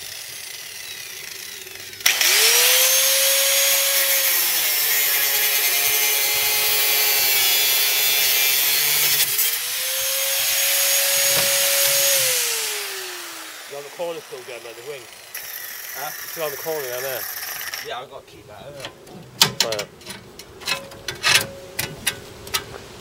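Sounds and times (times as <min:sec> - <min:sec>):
power grinder whining on metal: 0:00.0 - 0:18.0.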